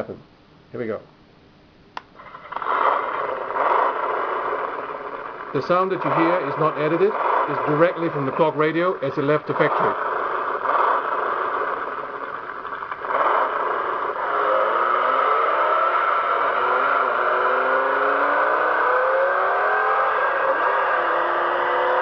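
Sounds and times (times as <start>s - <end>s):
recorded engine revving through speaker: 5.6s - 10.0s, 13.1s - 22.0s.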